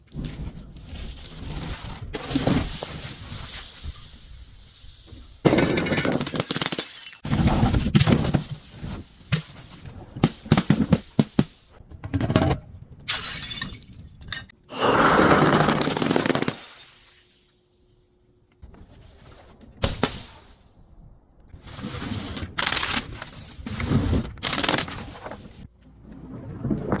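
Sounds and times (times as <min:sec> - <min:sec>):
glass bottles breaking: 0:13.1 - 0:14.5.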